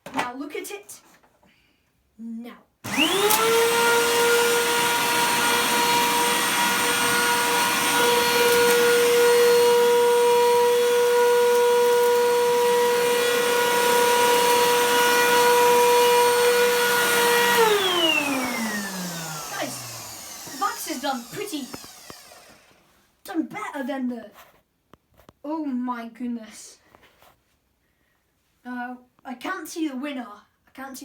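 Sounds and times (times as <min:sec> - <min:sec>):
vacuum cleaner motor whine: 0:02.8 - 0:22.9.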